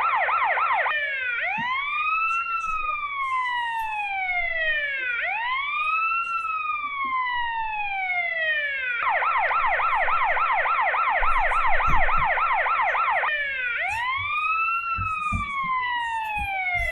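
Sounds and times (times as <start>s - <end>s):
police car siren: 0.0s - 16.9s
low thumps: 9.6s - 12.8s.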